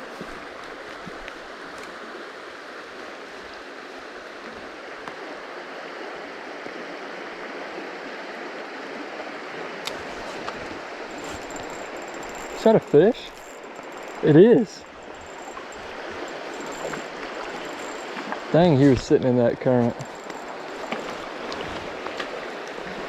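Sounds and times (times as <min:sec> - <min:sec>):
faint ticks: 0:09.8 - 0:18.5, 0:19.9 - 0:23.0.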